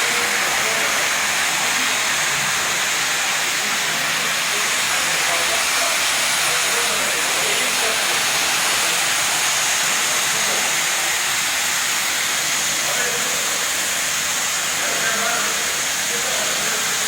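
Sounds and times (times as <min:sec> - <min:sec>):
carpet washing machine hissing: 0:00.0 - 0:17.0.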